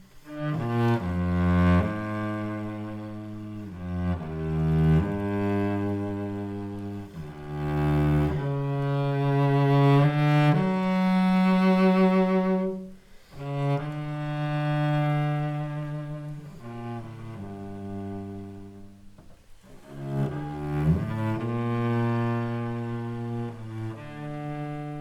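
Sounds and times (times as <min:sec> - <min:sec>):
cello bowed notes: 0:00.1 - 0:25.0.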